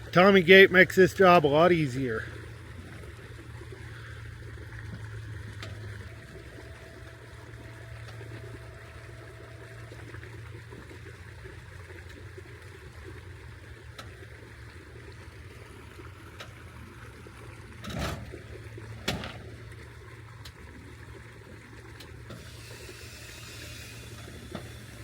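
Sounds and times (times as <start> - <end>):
engine running with low hum: 0.0 - 25.0.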